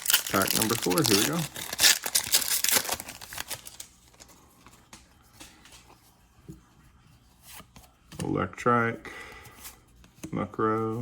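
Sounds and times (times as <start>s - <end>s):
foil wrapper crinkling: 0.0s - 4.3s.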